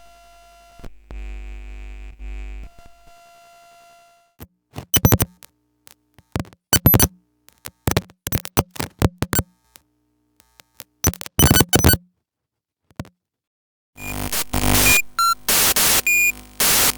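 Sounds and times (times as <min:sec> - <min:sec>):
electronic crackling glitches: 0:05.0 - 0:05.3, 0:06.8 - 0:07.1, 0:11.0 - 0:12.0, 0:14.0 - 0:16.9
low electronic buzz: 0:14.0 - 0:16.9.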